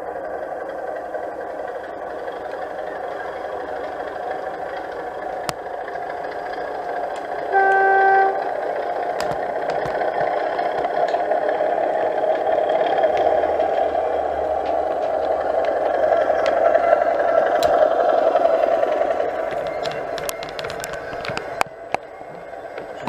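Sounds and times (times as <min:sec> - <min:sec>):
model locomotive engine sound: 0:00.0 - 0:23.0
short horn blast: 0:07.5 - 0:08.5
clicks: 0:13.0 - 0:18.0, 0:18.9 - 0:22.1.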